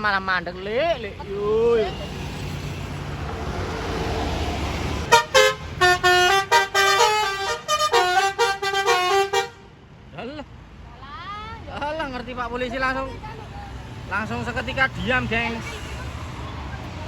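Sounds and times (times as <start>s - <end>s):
bus engine rumble: 0.0s - 17.0s
musical air horn melody: 5.1s - 9.6s.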